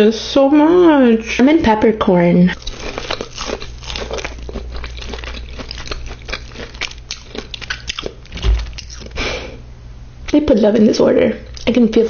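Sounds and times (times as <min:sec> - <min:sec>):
chewing crunchy food: 0:02.6 - 0:09.3, 0:11.4 - 0:11.8
low thump: 0:08.4 - 0:08.7.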